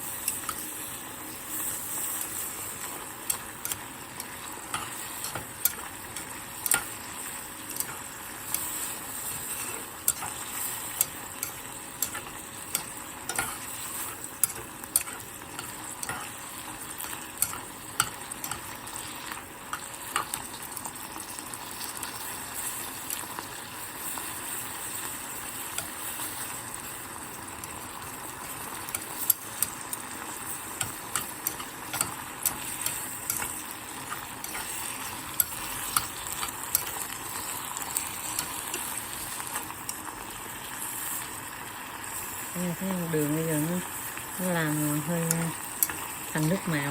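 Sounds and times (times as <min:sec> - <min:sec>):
food sizzling in oil: 0:00.0 - 0:46.9
utensil clicking against pot: 0:03.2 - 0:20.5, 0:27.6 - 0:40.1, 0:45.3 - 0:46.5.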